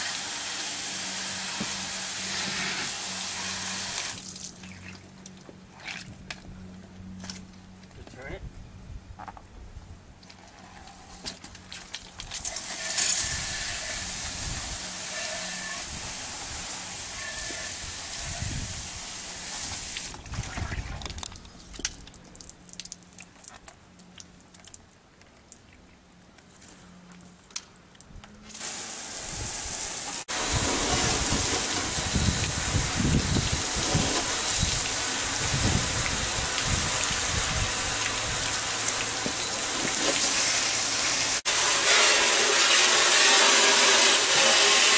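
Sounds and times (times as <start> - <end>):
water spray hissing: 0.0 - 4.6, 12.4 - 20.2, 28.5 - 44.9.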